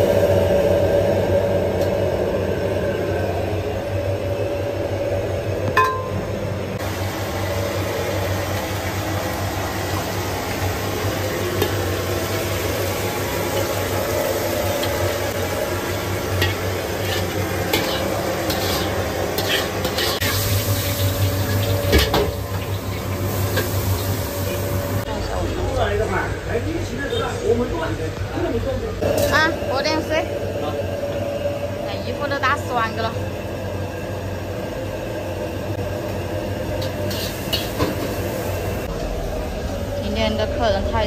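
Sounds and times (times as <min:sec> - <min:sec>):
food sizzling in a wok: 0:00.0 - 0:02.6, 0:06.8 - 0:25.1, 0:29.0 - 0:41.0
low hum: 0:38.8 - 0:41.0.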